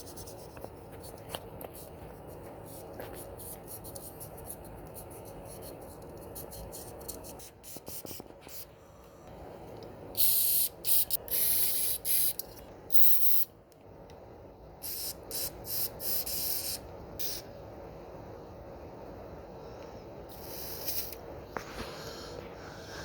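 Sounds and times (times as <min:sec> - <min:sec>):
scratching and handling of parts: 0:00.0 - 0:08.6.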